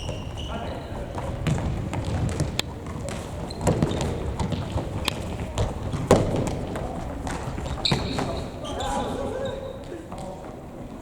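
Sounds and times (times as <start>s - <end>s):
running footsteps: 0.0s - 11.0s
ball kicks and thuds: 1.1s - 8.3s.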